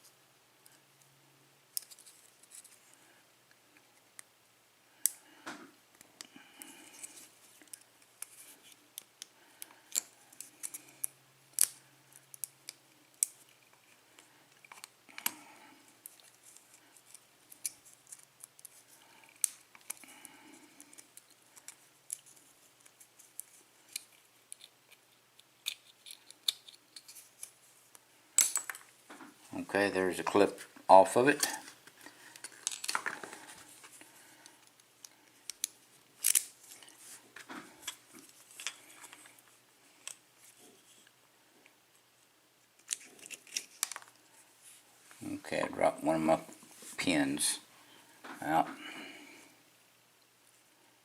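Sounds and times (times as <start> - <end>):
small metal clicks and scrapes: 6.2 - 15.4, 16.0 - 20.1, 20.8 - 27.6, 32.4 - 36.9, 42.8 - 44.2.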